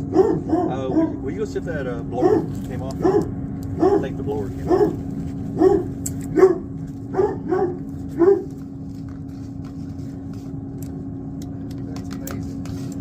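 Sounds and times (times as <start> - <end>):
dog barking: 0.0 - 1.3, 2.1 - 8.6
steady machine hum: 0.0 - 13.0.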